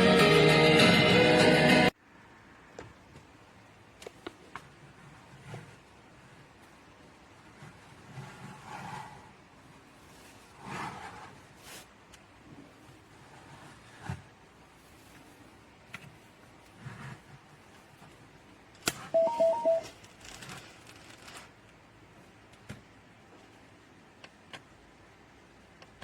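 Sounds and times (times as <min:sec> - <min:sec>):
short electronic beeps: 0:19.2 - 0:19.9.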